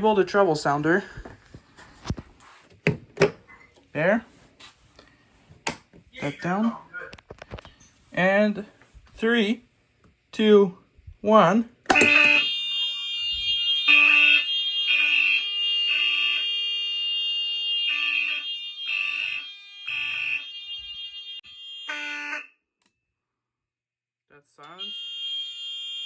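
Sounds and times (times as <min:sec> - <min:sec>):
pulsing fire alarm horns: 0:11.9 - 0:22.7, 0:24.6 - 0:26.0.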